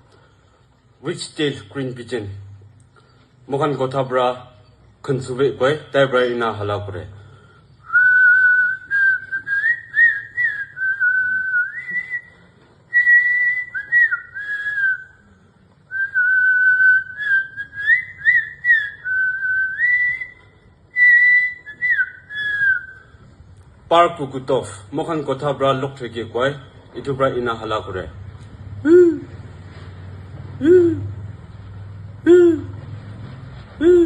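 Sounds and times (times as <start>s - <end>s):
person whistling bird call: 15.9s - 23.2s, 30.6s - 31.1s.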